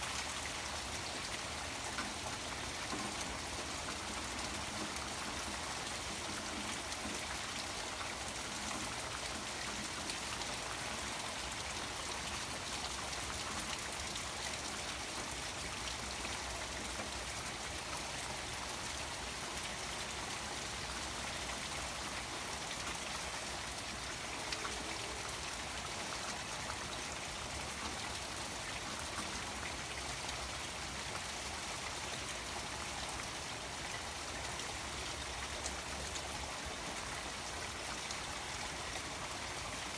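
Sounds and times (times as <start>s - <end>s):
rain falling on pond: 0.0s - 39.9s.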